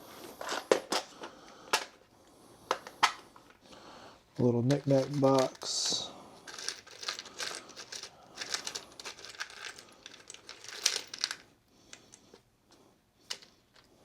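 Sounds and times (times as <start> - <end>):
small items rattling in a box: 4.5 - 11.4.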